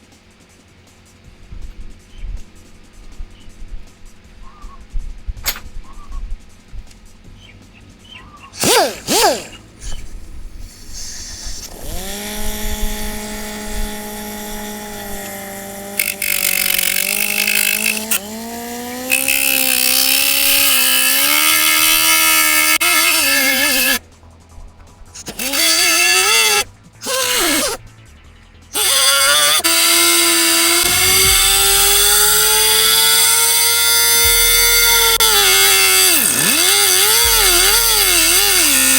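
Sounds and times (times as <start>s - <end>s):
grinding into sheet metal: 8.6s - 10.1s, 10.7s - 24.0s, 25.1s - 27.8s, 28.7s - 38.9s
air cut-off tool whining: 8.6s - 24.1s, 25.0s - 38.9s.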